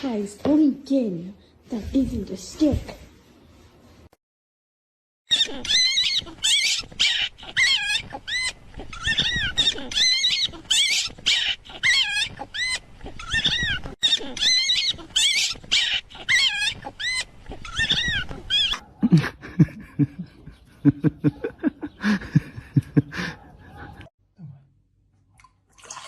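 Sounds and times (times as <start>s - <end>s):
dog yelping: 5.3s - 19.0s.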